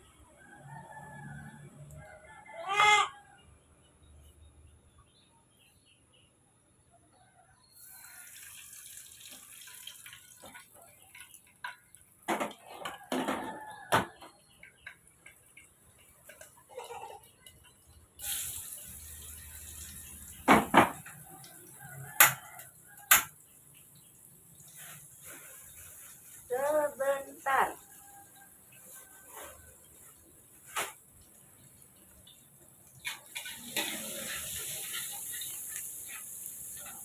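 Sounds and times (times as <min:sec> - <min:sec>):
pots and pans clattering: 0:10.3 - 0:17.8, 0:20.4 - 0:21.4, 0:33.0 - 0:37.0.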